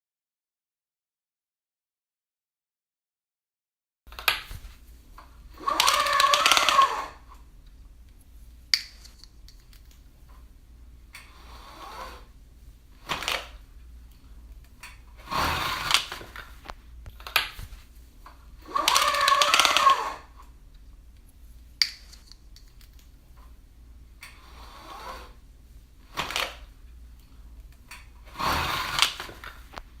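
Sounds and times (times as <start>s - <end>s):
blinds clicking: 4.1s - 7.5s, 13.0s - 20.6s, 26.0s - 27.0s, 27.6s - 30.0s
window blinds clattering: 5.6s - 7.2s, 13.0s - 13.6s, 14.8s - 17.8s, 18.6s - 20.3s, 28.0s - 29.9s.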